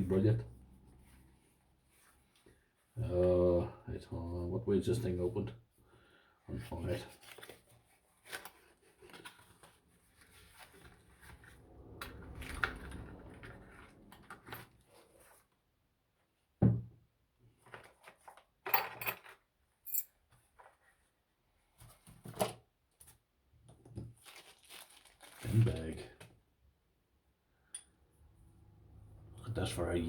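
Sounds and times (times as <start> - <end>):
thump: 16.6 - 16.9
packaging rustling: 24.2 - 25.8.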